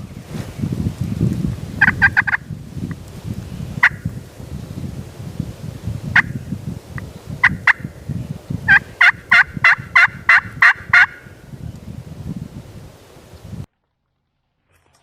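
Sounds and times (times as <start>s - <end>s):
turkey yelping: 1.8s - 2.4s, 3.8s - 4.0s, 8.7s - 11.2s.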